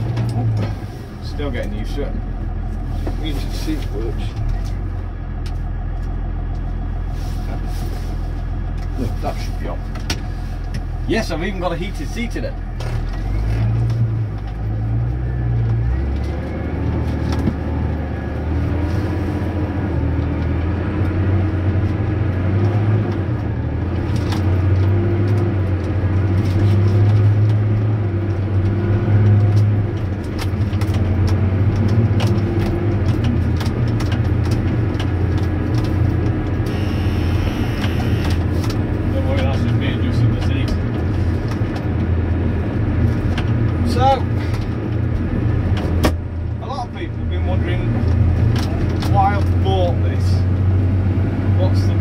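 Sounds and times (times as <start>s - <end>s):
tractor diesel engine running: 0.0s - 52.0s
clicks and rattles in cab: 29.2s - 36.7s, 37.8s - 42.2s.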